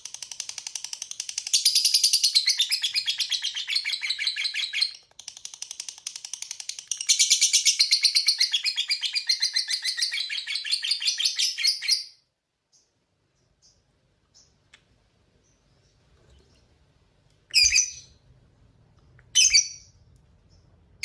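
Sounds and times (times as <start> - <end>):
lovebird chatter: 0.0 - 12.0, 17.5 - 18.2.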